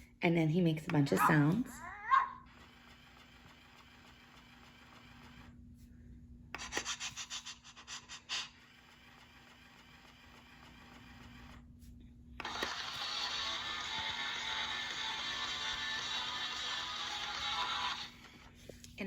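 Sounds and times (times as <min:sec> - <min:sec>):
toy speaker pulsing sound effect: 0:06.6 - 0:10.9, 0:12.4 - 0:18.2
toy playing music: 0:12.4 - 0:18.2.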